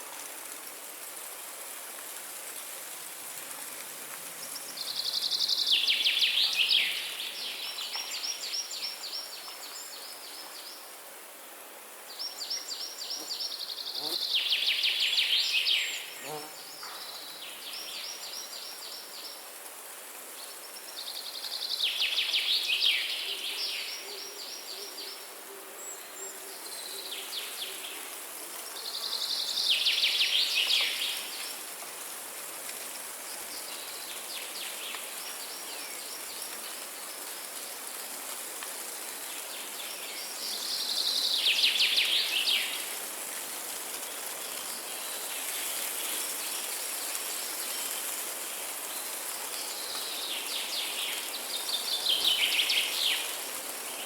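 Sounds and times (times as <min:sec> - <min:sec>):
high hiss of forest ambience: 0:00.0 - 0:54.0.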